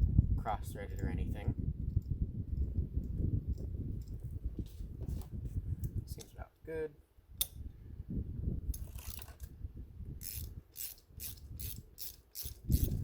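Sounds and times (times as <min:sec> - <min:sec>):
socket ratchet clicking: 0:10.2 - 0:13.0.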